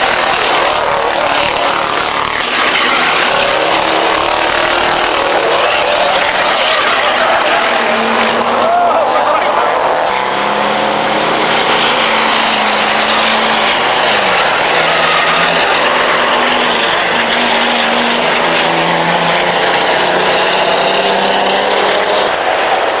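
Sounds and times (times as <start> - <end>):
diesel truck engines running hard: 0.0 - 23.0.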